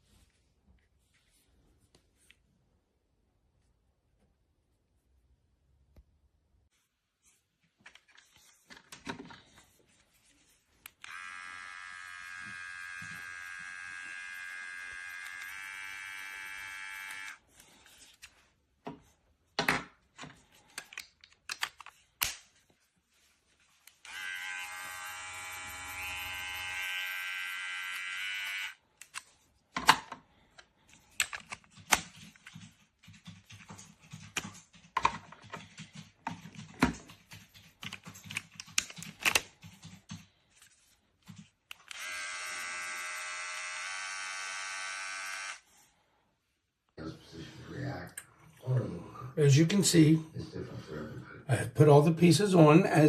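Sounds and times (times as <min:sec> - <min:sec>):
beard trimmer whirring: 0:10.8 - 0:17.4, 0:24.0 - 0:28.8, 0:41.7 - 0:45.6.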